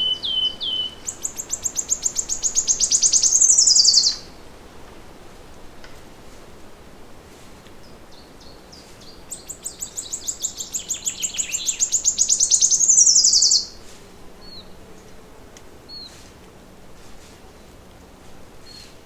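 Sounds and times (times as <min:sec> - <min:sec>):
songbird trilling: 0:00.0 - 0:04.3, 0:08.1 - 0:13.8.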